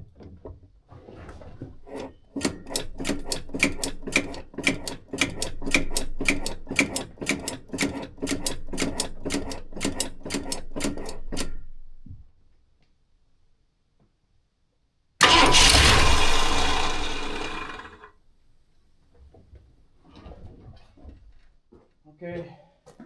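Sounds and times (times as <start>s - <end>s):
starter motor cranking engine: 1.8s - 11.6s, 15.2s - 18.1s.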